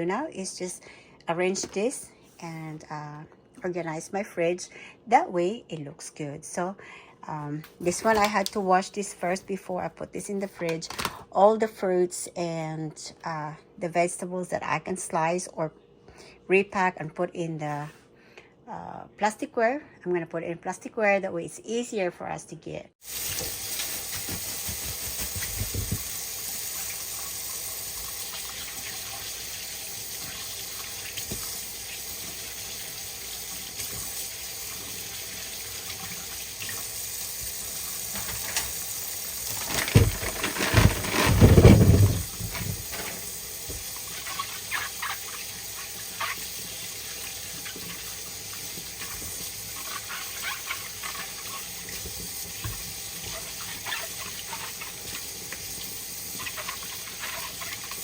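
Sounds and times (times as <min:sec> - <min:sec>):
tap running into sink: 0:23.2 - 0:27.0.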